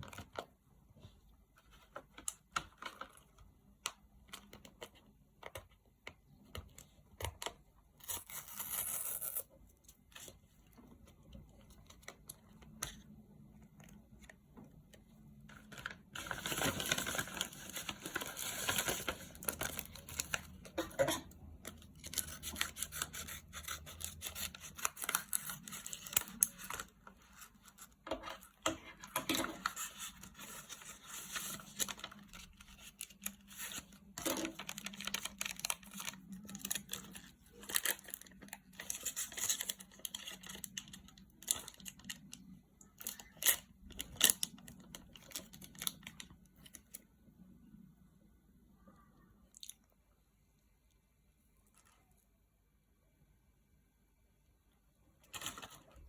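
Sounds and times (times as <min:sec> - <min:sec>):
packaging tearing and crinkling: 0:29.6 - 0:42.2.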